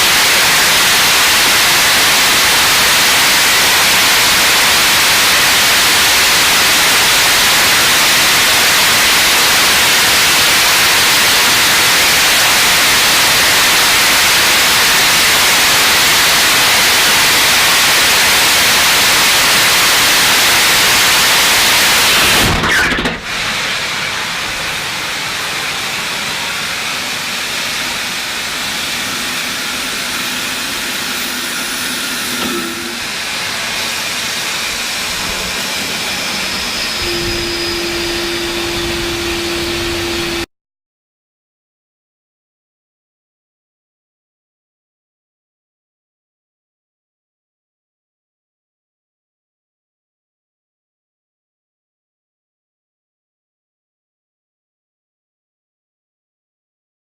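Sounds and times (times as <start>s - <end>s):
hiss: 0.0s - 22.5s, 23.3s - 40.5s
rocket engine firing: 0.0s - 40.5s.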